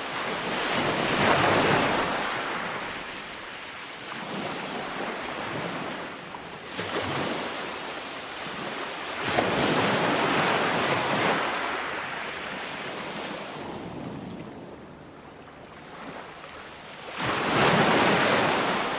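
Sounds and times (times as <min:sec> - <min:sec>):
ocean waves breaking: 0:00.0 - 0:18.9
wind on microphone: 0:12.9 - 0:16.2.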